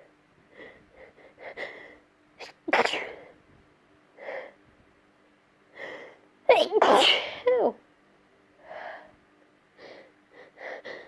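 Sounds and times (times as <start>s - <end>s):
woman sneezing: 2.4s - 3.2s, 6.5s - 7.8s.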